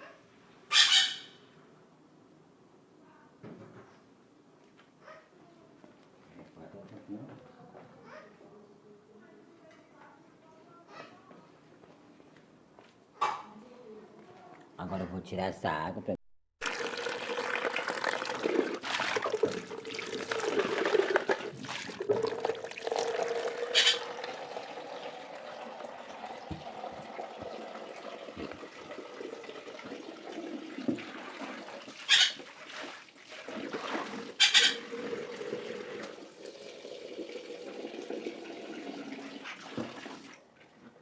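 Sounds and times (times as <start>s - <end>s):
sharp splashes or knocks: 16.6s - 24.3s
water draining and splashing: 16.6s - 41.0s.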